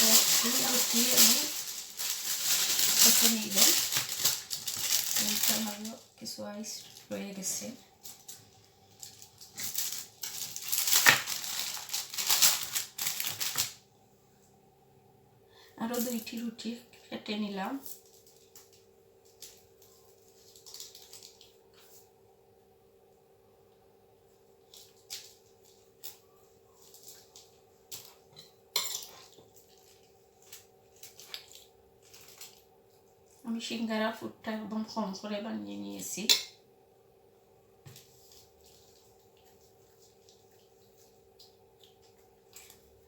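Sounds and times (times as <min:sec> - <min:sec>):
faint steady hum: 0:00.0 - 0:43.0
knife cutting thin wrappers: 0:09.4 - 0:13.8.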